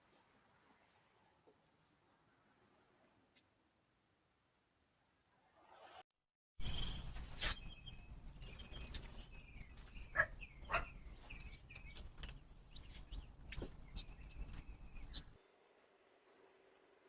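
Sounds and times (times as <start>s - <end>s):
small birds chirping: 6.6s - 16.6s.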